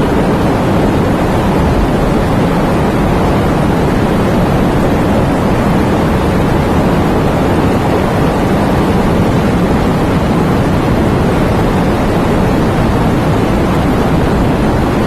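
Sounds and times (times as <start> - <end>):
steady rain hiss: 0.0 - 15.0.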